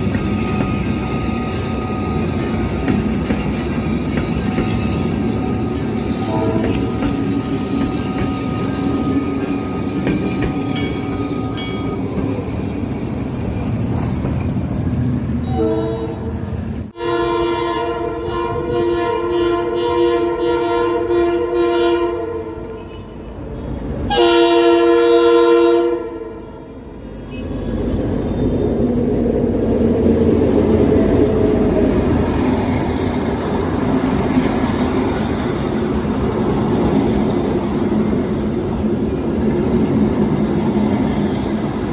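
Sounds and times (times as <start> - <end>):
diesel locomotive running: 0.0 - 41.9
locomotive horn blasts: 6.2 - 9.2, 15.4 - 23.3, 24.1 - 27.6.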